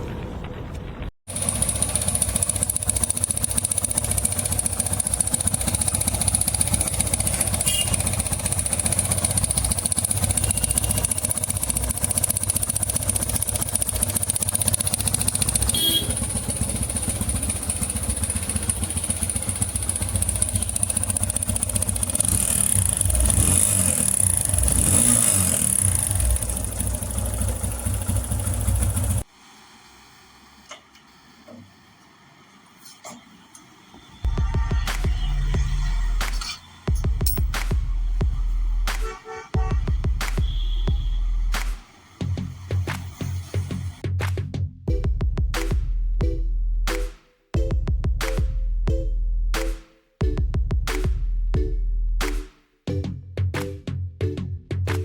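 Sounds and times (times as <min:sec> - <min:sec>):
motorcycle engine running: 0:01.3 - 0:29.3, 0:34.3 - 0:42.4.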